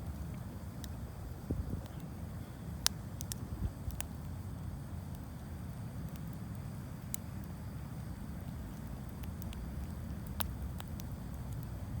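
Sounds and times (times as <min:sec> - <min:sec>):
campfire crackling and popping: 0:00.0 - 0:12.0.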